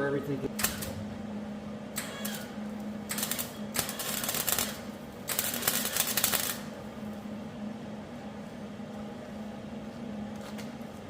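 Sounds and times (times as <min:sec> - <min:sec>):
steady low hum: 0:00.0 - 0:11.0
welder arc crackling: 0:03.1 - 0:06.8.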